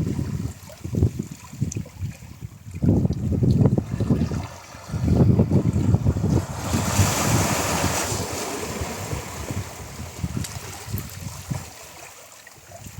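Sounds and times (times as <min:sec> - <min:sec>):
wind buffeting microphone: 0:00.0 - 0:12.0
ocean waves breaking: 0:03.7 - 0:11.0.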